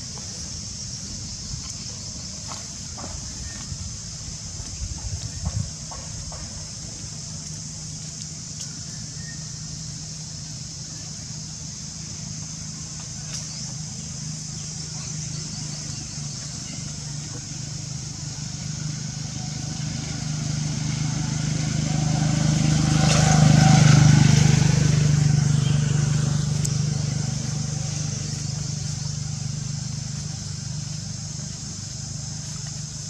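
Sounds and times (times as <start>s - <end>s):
vehicle engine passing by: 12.9s - 33.0s.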